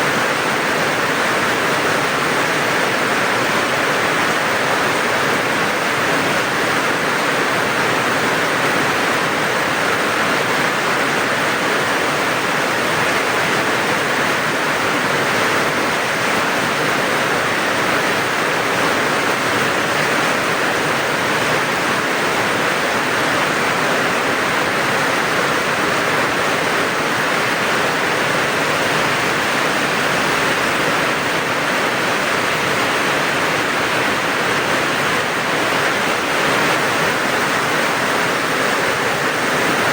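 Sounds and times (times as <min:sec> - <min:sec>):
rain falling steadily: 0:00.0 - 0:39.9.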